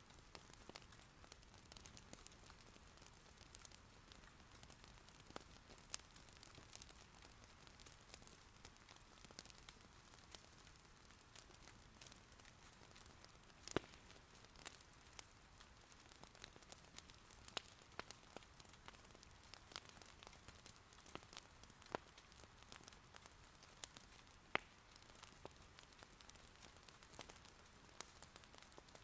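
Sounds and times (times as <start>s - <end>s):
faint rain hiss: 0.0s - 29.0s
wood fire crackling and popping: 0.0s - 29.0s.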